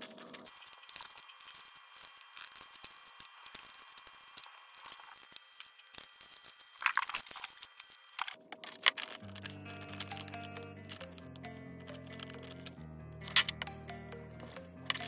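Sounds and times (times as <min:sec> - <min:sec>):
paper crinkling: 0:00.0 - 0:11.4.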